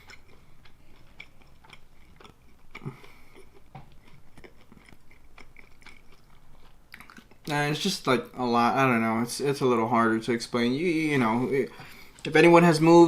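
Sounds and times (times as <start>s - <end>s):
person chewing food: 0.0s - 7.5s.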